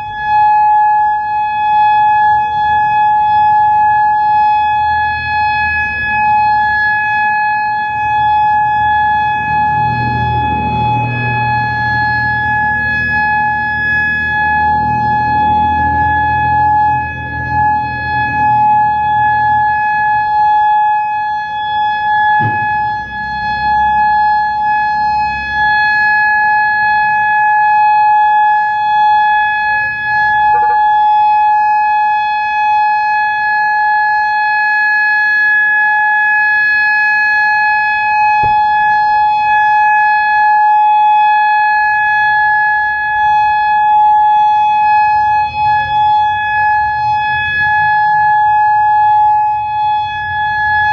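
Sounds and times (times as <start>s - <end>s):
warning siren steady alert tone: 0.0s - 50.9s.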